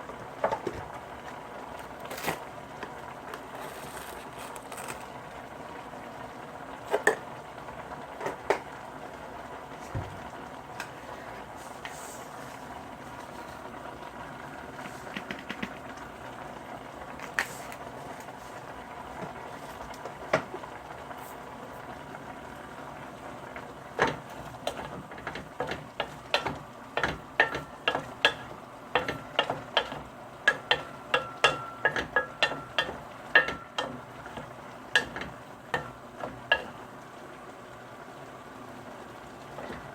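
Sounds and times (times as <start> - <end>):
food sizzling in a pan: 0.1 - 39.9
metal utensil clinking on pan: 26.3 - 34.0, 35.0 - 35.9.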